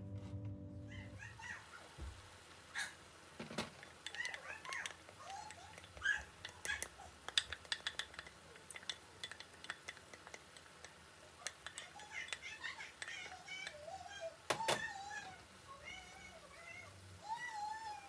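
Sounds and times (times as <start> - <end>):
cutlery and dishes clinking: 6.7 - 10.7.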